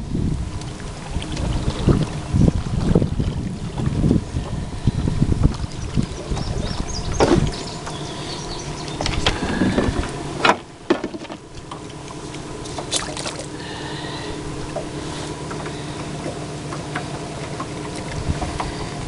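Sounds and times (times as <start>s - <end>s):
wind on microphone: 0.0s - 10.2s, 18.0s - 19.0s
knocks and clatter in boat: 0.0s - 13.5s, 14.5s - 19.0s
boat motor running: 0.0s - 19.0s.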